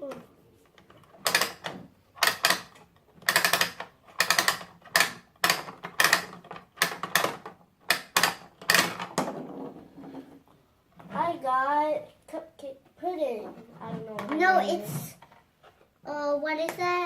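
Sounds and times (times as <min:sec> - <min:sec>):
plastic ratchet clicking: 0:02.2 - 0:08.9.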